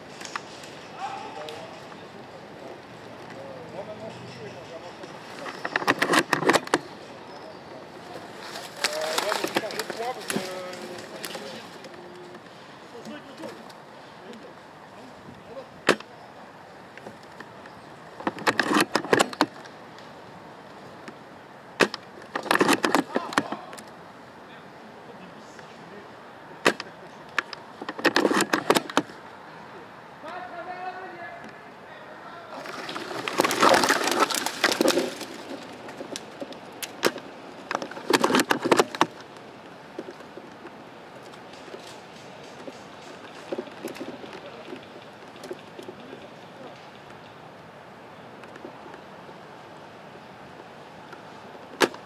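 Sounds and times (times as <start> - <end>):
dry twigs crackling and snapping: 0.1 - 2.1, 8.1 - 14.5, 32.6 - 47.3.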